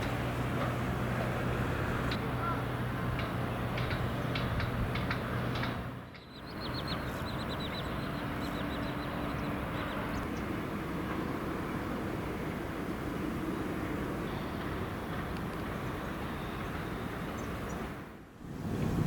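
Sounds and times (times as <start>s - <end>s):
distant city traffic: 0.0s - 19.0s
small birds chirping: 6.1s - 10.5s.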